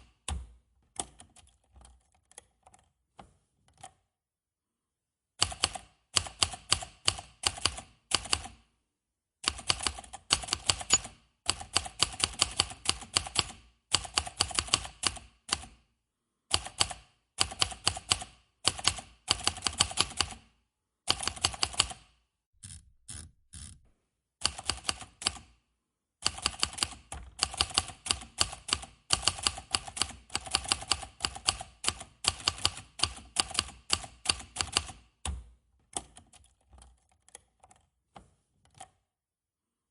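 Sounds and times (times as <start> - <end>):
typewriter keys clacking: 9.6 - 14.9.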